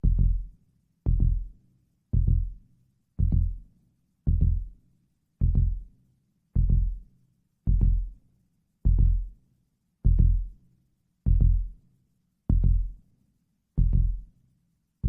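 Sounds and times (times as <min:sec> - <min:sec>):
heartbeat thumps: 0:00.0 - 0:00.5, 0:01.1 - 0:01.5, 0:02.2 - 0:02.6, 0:03.2 - 0:03.6, 0:04.3 - 0:04.7, 0:05.4 - 0:05.9, 0:06.6 - 0:07.0, 0:07.7 - 0:08.2, 0:08.9 - 0:09.4, 0:10.0 - 0:10.5, 0:11.3 - 0:11.8, 0:12.5 - 0:13.0, 0:13.8 - 0:14.3.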